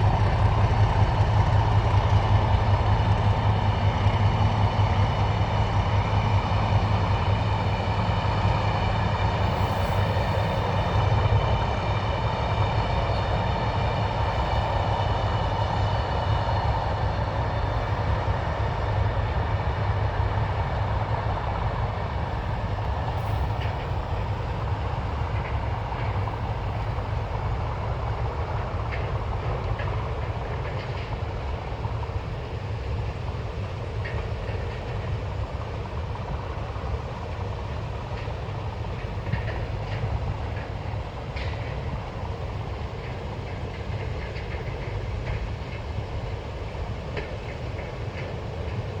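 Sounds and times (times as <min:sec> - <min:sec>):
freight train rumbling past: 0:00.0 - 0:49.0
wheels clicking over rail joints: 0:21.5 - 0:49.0.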